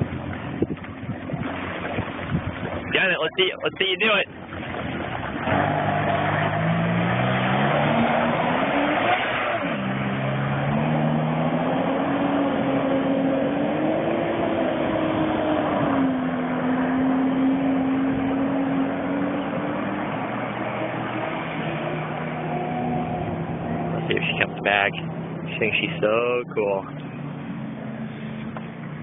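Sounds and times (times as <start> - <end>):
jet ski engine revving: 0.0 - 29.0.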